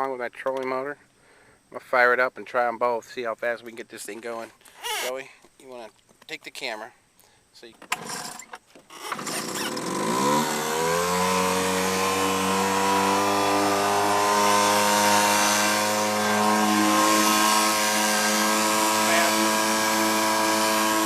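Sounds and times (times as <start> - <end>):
outboard motor starting: 7.9 - 21.0.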